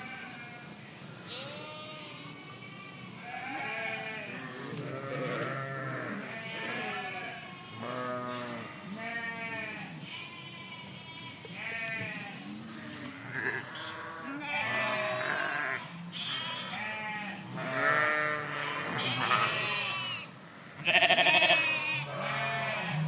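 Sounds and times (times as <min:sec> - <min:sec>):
sheep bleating: 0:01.2 - 0:02.4, 0:03.2 - 0:10.2, 0:11.4 - 0:23.0.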